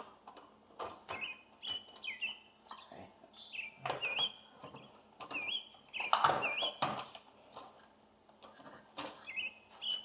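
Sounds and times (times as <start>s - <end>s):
songbird whistling phrases: 3.4s - 4.5s, 9.3s - 10.0s.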